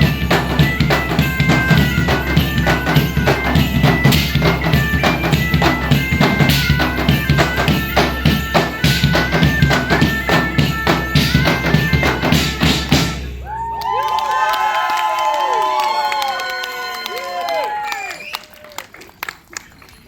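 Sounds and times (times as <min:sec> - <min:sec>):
drum and tambourine beat: 0:00.0 - 0:13.5
piping folk melody: 0:00.0 - 0:13.7.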